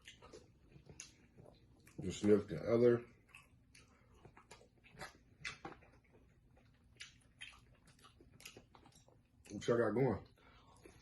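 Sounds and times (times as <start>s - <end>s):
wet chewing mouth smacks: 0.0s - 2.3s, 3.2s - 9.6s.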